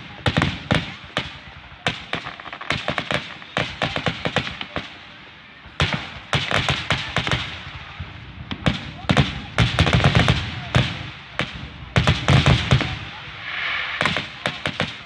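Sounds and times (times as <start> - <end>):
fireworks shell bursts: 13.4 - 15.0.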